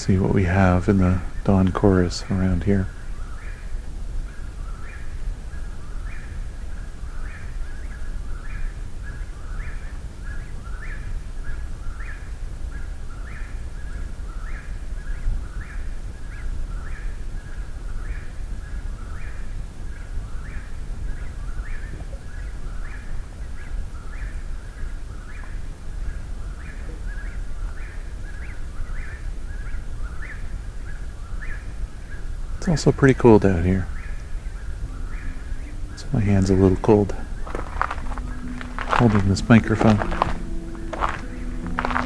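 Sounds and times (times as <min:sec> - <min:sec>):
steady low rumble: 0:34.3 - 0:42.0.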